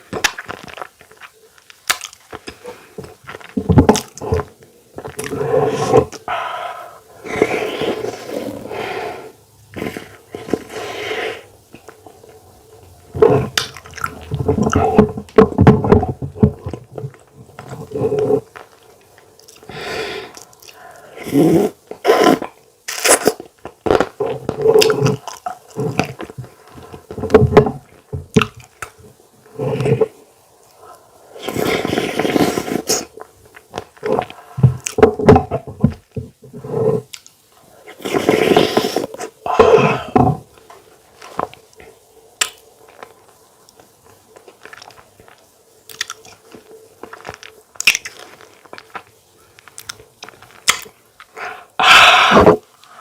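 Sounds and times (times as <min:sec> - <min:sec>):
wet chewing and lip smacking: 0:41.5 - 0:51.6.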